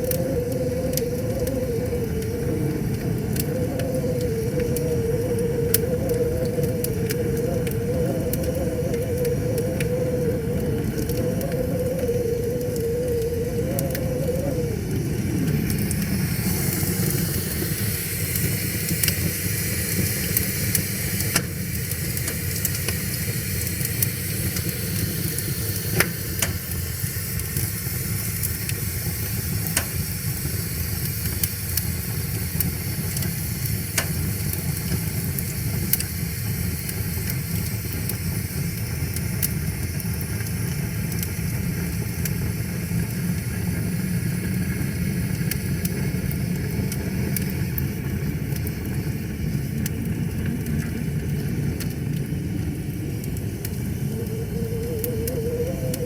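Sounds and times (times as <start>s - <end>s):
wavering droning hum: 0.0s - 26.5s, 46.4s - 56.0s
bright hiss: 0.0s - 46.4s
wood fire crackling and popping: 0.0s - 56.0s.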